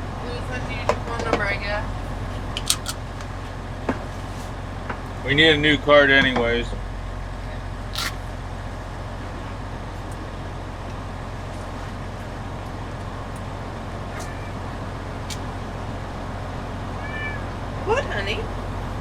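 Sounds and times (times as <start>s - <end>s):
diesel engine idling: 0.0s - 19.0s
sharp click: 2.6s - 3.0s, 8.0s - 8.2s.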